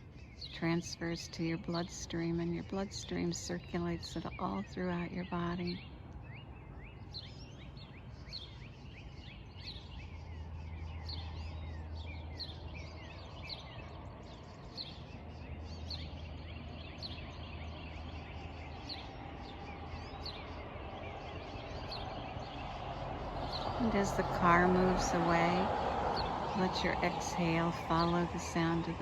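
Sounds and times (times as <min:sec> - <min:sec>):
birds chirping and singing: 0:00.0 - 0:29.0
distant car hum: 0:09.1 - 0:29.0.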